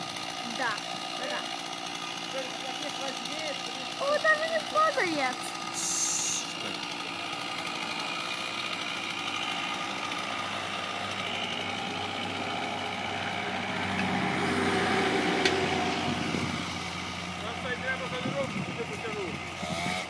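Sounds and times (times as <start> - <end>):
engine running: 0.0 - 20.0.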